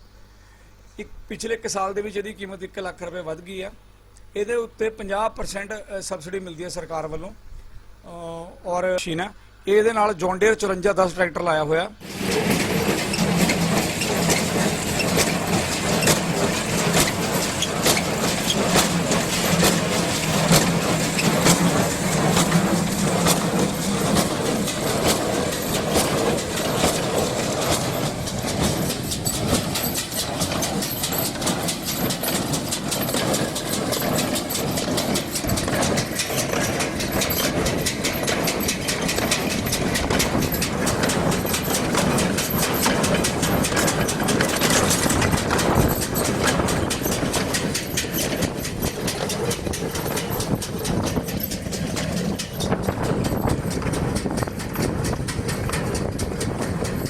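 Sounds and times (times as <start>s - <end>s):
baler mechanical clatter: 12.0s - 57.0s
tractor engine running: 12.0s - 57.0s.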